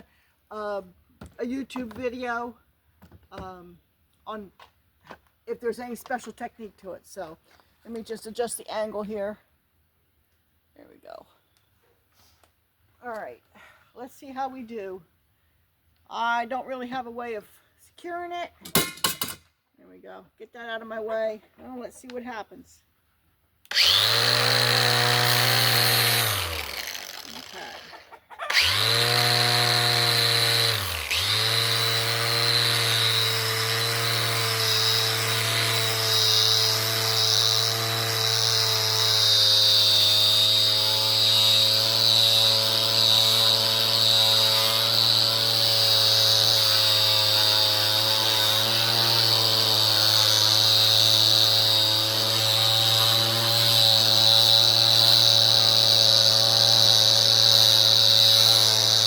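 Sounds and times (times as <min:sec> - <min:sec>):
angle grinder sanding wood: 0:23.7 - 0:59.0.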